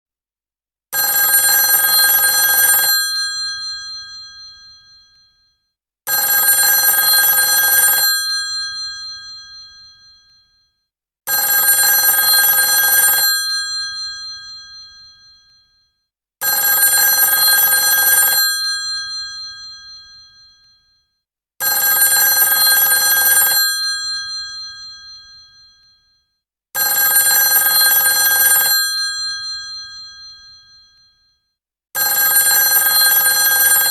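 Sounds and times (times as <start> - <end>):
old telephone bell ringing: 1.1 - 3.1, 6.2 - 8.5, 11.4 - 13.8, 16.6 - 18.5, 21.7 - 25.4, 26.9 - 30.8, 32.0 - 33.9.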